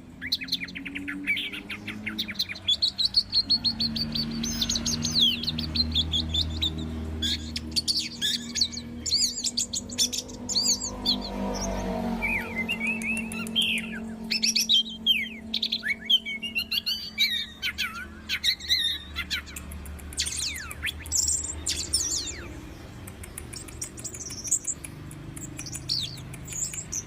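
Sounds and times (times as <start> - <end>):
thrush singing whistled song: 0.0 - 27.0.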